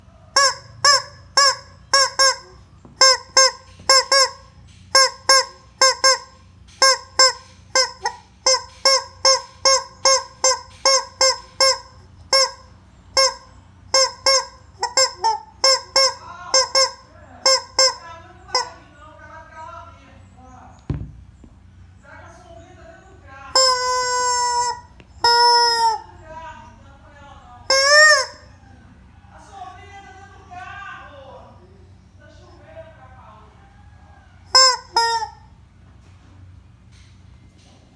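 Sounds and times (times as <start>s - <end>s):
rubber chicken toy squawking: 0.4s - 18.8s, 23.6s - 26.2s, 27.7s - 28.5s, 34.5s - 35.5s.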